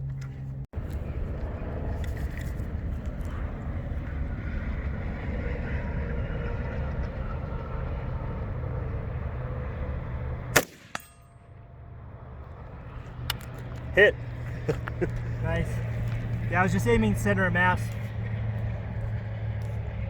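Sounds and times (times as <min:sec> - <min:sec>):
steady low rumble: 0:00.0 - 0:20.0
loud gunshot: 0:10.5 - 0:11.2.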